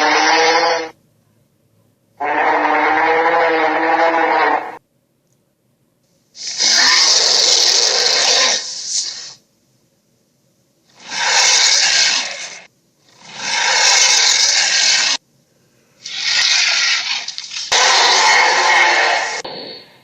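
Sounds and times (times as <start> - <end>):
raspy monster roar: 2.2 - 4.8, 6.4 - 8.8, 11.0 - 15.2, 16.1 - 19.8.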